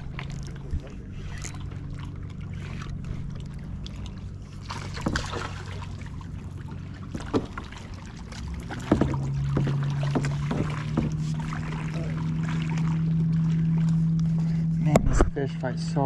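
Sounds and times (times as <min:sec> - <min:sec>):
motorboat engine droning: 0:00.0 - 0:16.0
knocks on kayak: 0:04.9 - 0:05.5, 0:07.1 - 0:07.8, 0:08.6 - 0:11.8.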